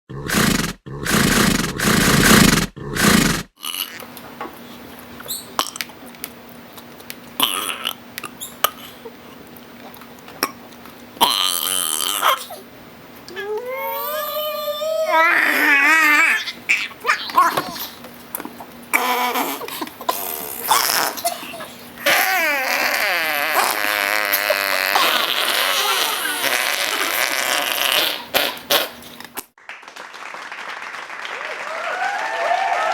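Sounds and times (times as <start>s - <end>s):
raspy fart noises: 0.1s - 4.0s, 22.0s - 29.2s.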